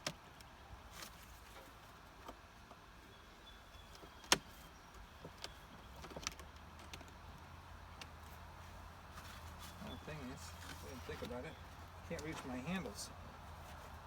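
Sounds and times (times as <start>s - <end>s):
wooden boxes clicking and tapping: 3.8s - 8.2s.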